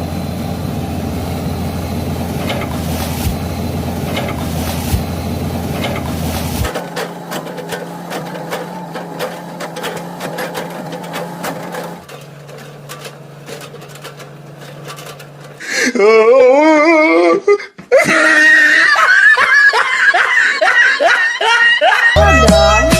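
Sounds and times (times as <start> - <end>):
mechanical hum with clicking: 0.0 - 15.7
excavator engine rumble: 0.0 - 17.2.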